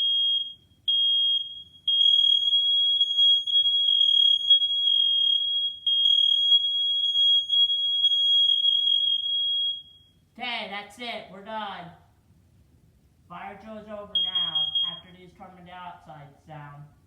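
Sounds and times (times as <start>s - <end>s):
smoke alarms beeping: 0.0s - 10.2s, 14.0s - 15.5s.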